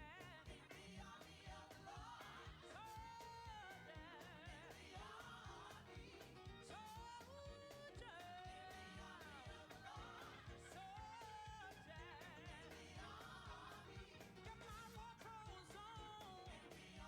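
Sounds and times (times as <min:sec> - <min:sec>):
drums steady beat: 0:00.0 - 0:17.0
gospel band: 0:00.0 - 0:17.0
person singing with vibrato: 0:00.0 - 0:17.0.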